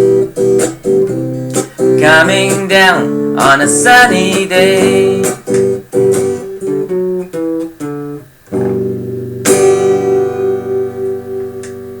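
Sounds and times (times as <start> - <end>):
acoustic guitar playing: 0.0 - 12.0.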